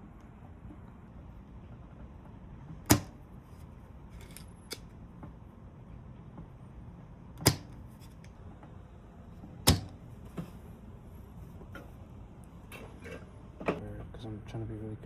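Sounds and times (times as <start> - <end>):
sharp tool clicks: 7.4 - 8.3.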